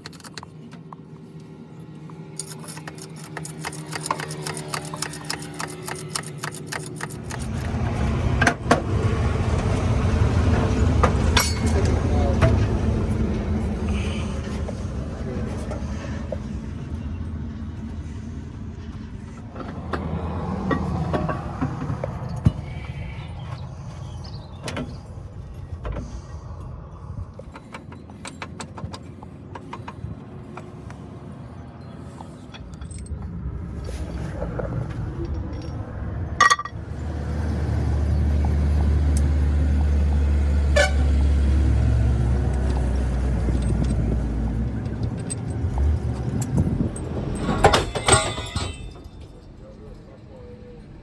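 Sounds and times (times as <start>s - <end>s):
vehicle engine rumble: 0.0s - 51.0s
sharp metallic clicks and taps: 2.4s - 7.8s.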